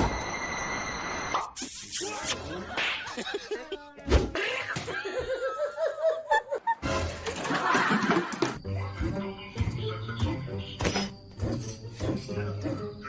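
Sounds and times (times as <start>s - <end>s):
people laughing: 2.2s - 8.6s
background music: 6.6s - 13.0s.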